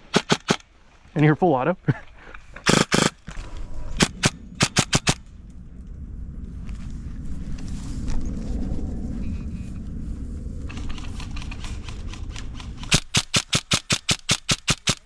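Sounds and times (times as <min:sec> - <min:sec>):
airsoft rifle rapid shots: 0:00.1 - 0:00.6, 0:02.6 - 0:03.2, 0:04.0 - 0:05.2, 0:12.9 - 0:15.0.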